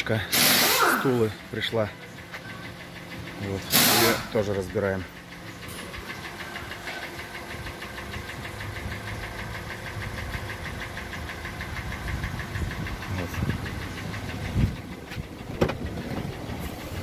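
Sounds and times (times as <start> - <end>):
engine idling with knock: 0.0 - 17.0.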